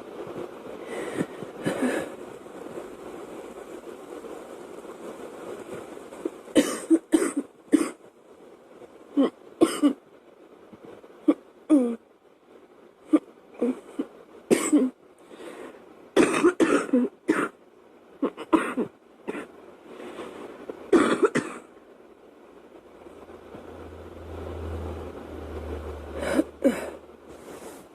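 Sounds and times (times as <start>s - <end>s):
girl coughing: 6.6s - 7.9s, 14.5s - 15.0s, 16.2s - 17.5s.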